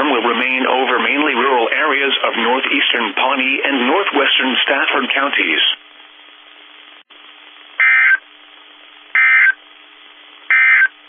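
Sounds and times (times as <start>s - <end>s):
radio hiss: 0.0s - 6.2s
warbling data burst squawks: 7.8s - 8.2s, 9.2s - 9.6s, 10.5s - 10.9s.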